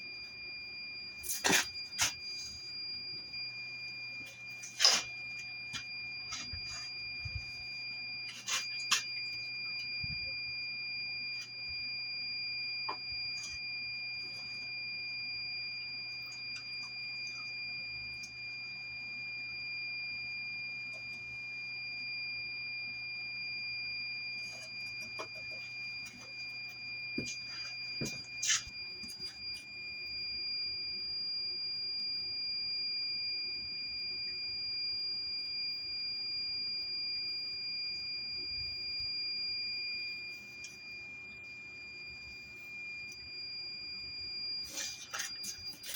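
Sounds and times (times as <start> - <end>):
fire alarm high-pitched tone: 0.0 - 45.9
clicks and scrapes of cleaning: 1.2 - 2.4, 4.6 - 5.1, 8.3 - 9.1, 44.6 - 45.9.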